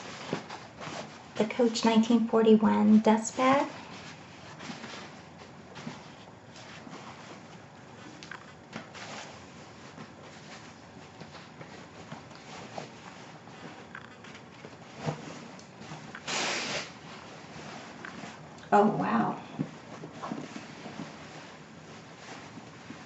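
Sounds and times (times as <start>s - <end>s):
fabric rustling: 0.0s - 2.0s, 3.4s - 23.0s
rasp of cloth: 14.8s - 17.8s.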